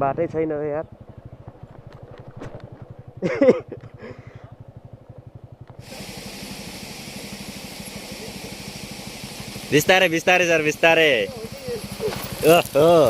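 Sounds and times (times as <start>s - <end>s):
motorcycle engine at low revs: 0.0s - 13.0s
steady hiss: 5.8s - 13.0s.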